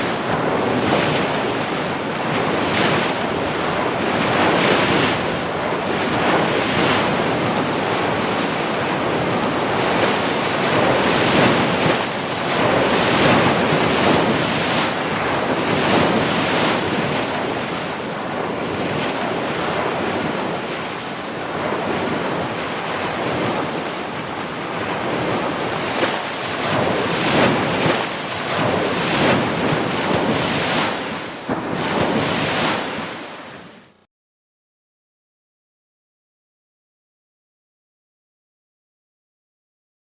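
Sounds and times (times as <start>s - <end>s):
ocean surf breaking: 0.0s - 34.0s.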